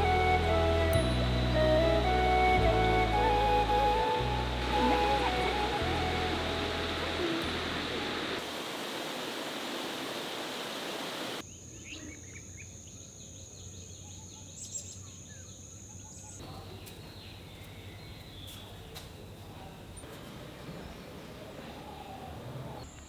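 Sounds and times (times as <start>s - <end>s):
heavy rain hissing: 0.0s - 11.4s.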